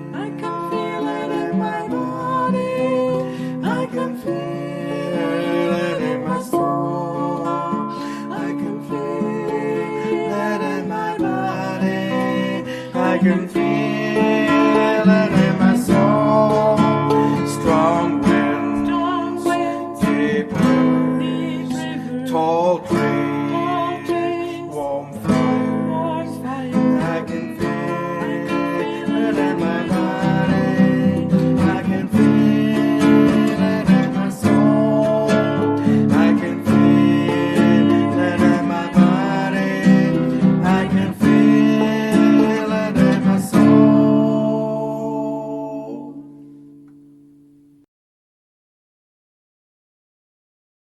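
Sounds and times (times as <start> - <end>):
acoustic guitar strumming: 0.0 - 47.9.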